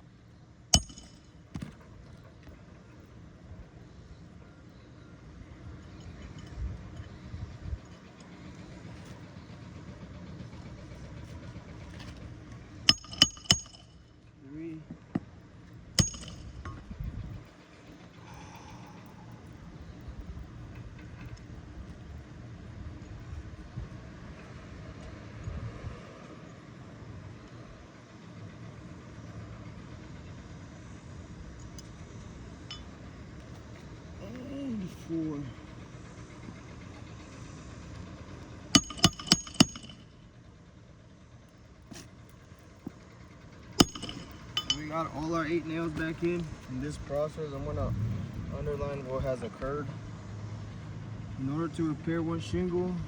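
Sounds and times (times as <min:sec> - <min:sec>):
engine humming: 0:00.0 - 0:53.0
hammer striking nail: 0:00.8 - 0:01.8, 0:12.9 - 0:13.9, 0:16.0 - 0:16.6, 0:38.8 - 0:40.0, 0:43.8 - 0:44.8.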